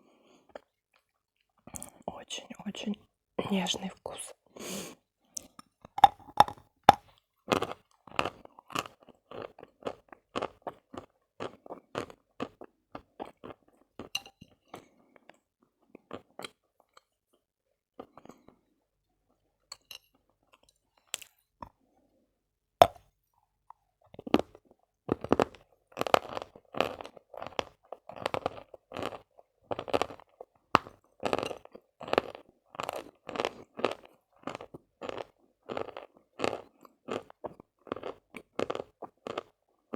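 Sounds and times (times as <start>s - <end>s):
chewing crunchy chalk: 5.4s - 6.6s, 25.1s - 39.6s.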